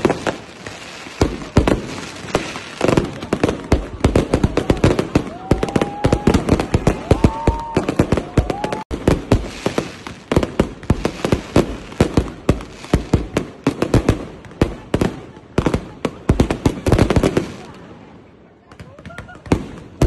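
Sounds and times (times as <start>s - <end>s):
fireworks whistling: 0.0s - 14.0s
fireworks bangs and crackles: 0.0s - 20.0s.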